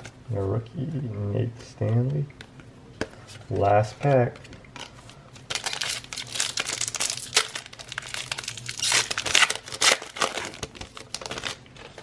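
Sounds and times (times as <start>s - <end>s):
foil wrapper tearing and crinkling: 5.4s - 12.0s.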